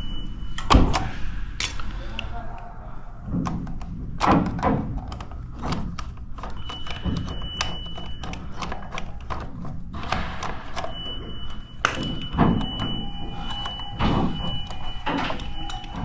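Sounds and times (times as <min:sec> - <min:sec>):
tools tapping on keypad lock: 0:00.6 - 0:01.9, 0:03.3 - 0:16.0.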